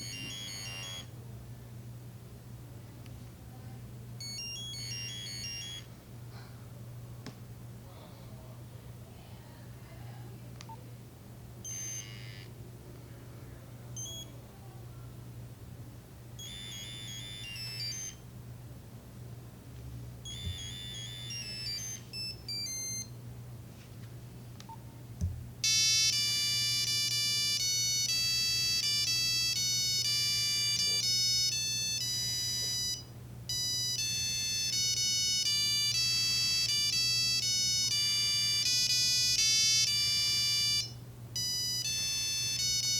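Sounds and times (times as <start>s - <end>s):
phone ringtone beeping notes: 0.0s - 1.1s, 4.2s - 5.9s, 11.6s - 12.5s, 14.0s - 14.3s, 16.4s - 18.2s, 20.2s - 23.1s, 25.6s - 42.9s
steady low hum: 0.0s - 42.9s
click: 10.6s - 10.8s.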